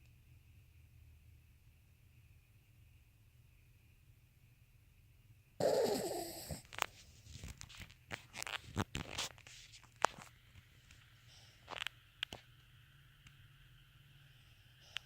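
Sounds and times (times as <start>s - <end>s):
dog snoring: 5.6s - 6.7s.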